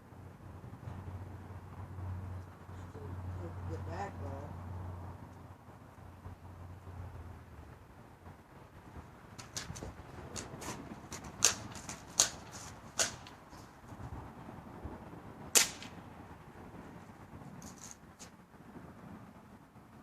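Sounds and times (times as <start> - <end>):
bb gun snaps: 15.6 - 15.9.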